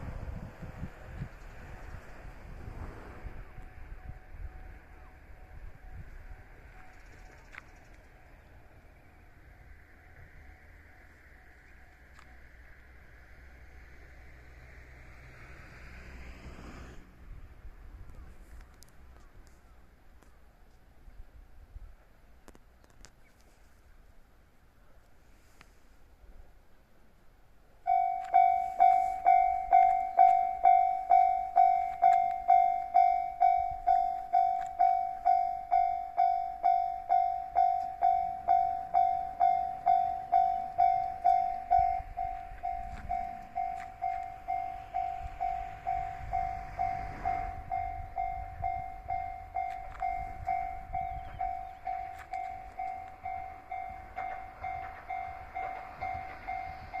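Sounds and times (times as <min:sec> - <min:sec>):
train rumbling past: 0:00.0 - 0:19.1, 0:23.8 - 0:57.0
level-crossing warning bell: 0:03.4 - 0:15.2, 0:27.8 - 0:57.0.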